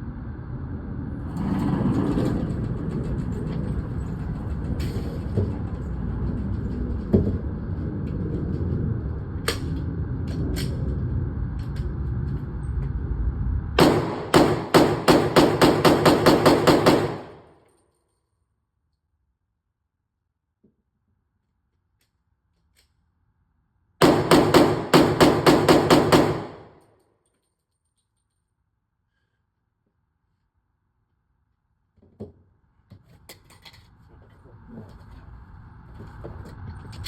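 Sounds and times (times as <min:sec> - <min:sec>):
steady background rumble: 0:00.0 - 0:17.5
pistol gunshots: 0:13.8 - 0:17.4, 0:24.0 - 0:26.7.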